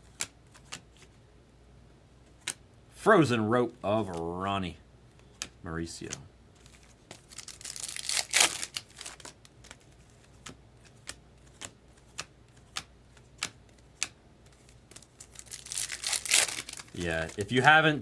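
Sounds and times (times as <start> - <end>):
cards flicked clicking: 5.2 - 6.2, 9.0 - 15.2
wrapper crinkling and tearing: 6.6 - 9.8, 14.8 - 17.8.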